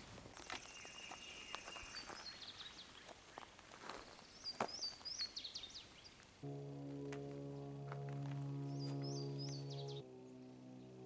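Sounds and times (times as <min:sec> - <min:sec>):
small birds chirping: 0:00.0 - 0:06.4, 0:08.7 - 0:10.0
footsteps outdoors: 0:00.0 - 0:09.9.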